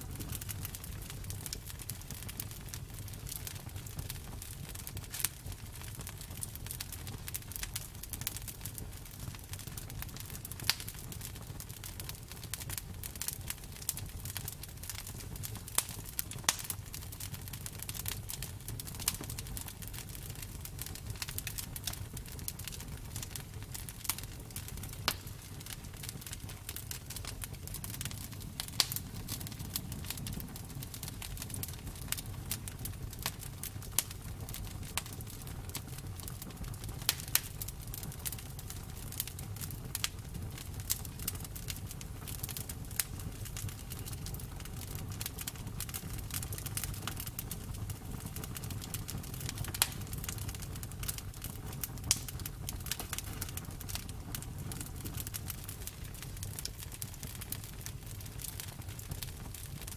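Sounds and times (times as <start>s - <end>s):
campfire crackling and popping: 0.0s - 59.9s.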